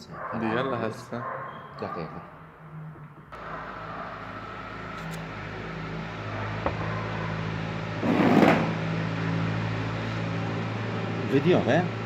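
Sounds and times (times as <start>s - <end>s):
low mechanical hum: 3.4s - 12.0s.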